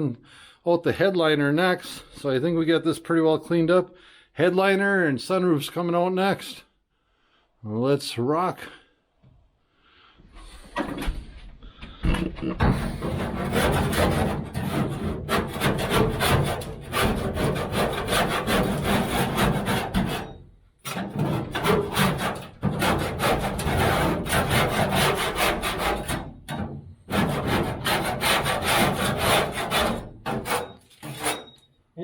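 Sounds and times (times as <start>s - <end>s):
hand scraper scraping sheet metal: 12.6s - 31.7s.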